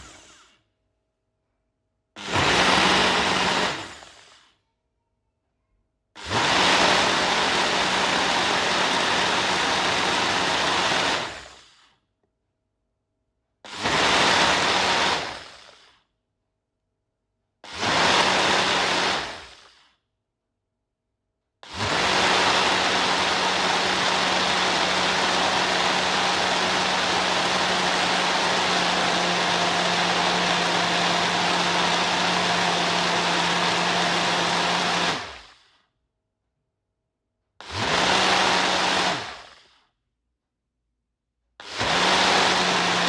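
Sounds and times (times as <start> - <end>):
blender motor whirring: 0.0 - 0.6, 2.2 - 4.6, 6.2 - 11.9, 13.7 - 16.0, 17.6 - 19.9, 21.6 - 35.8, 37.6 - 39.8, 41.6 - 43.0.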